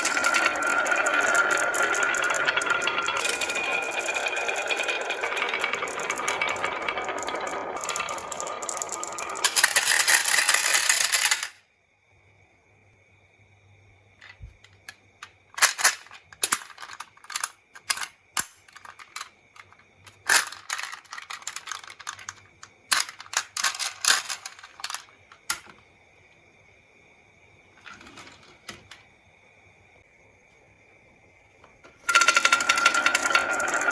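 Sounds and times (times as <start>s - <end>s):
marbles rattling on wooden run: 0.0s - 11.5s, 18.7s - 25.7s, 32.0s - 33.9s
marbles clicking on track: 0.0s - 11.6s, 15.6s - 25.8s, 32.0s - 33.9s
faint high whine: 18.8s - 33.2s.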